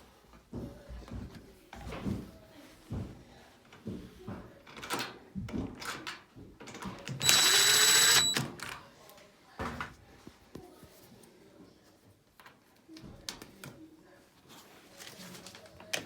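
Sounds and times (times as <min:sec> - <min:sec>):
power drill driving a screw: 0:07.2 - 0:08.6.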